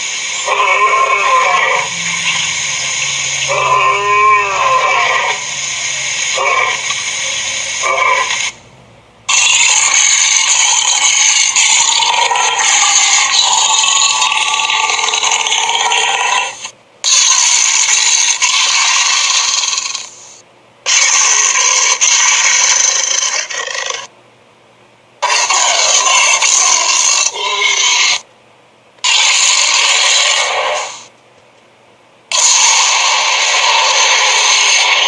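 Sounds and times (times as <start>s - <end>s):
cartoon sound effects: 0.5s - 5.6s.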